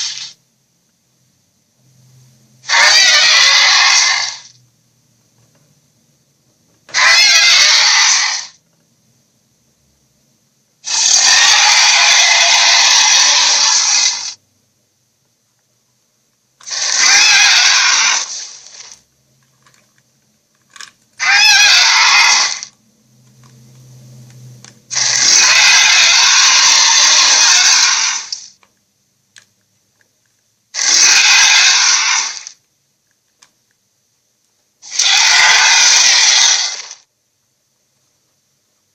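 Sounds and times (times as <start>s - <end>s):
gorilla roaring: 2.6s - 4.5s, 6.9s - 8.6s, 10.9s - 14.4s, 16.6s - 18.6s, 21.2s - 22.7s, 24.9s - 28.4s, 30.8s - 32.6s, 34.8s - 37.0s.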